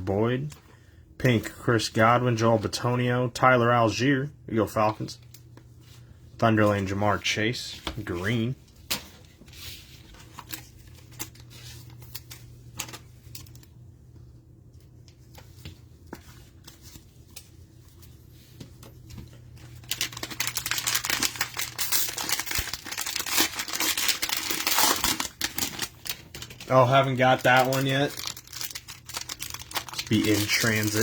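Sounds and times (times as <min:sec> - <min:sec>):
plastic wrapper crinkling and tearing: 0:19.5 - 0:31.0.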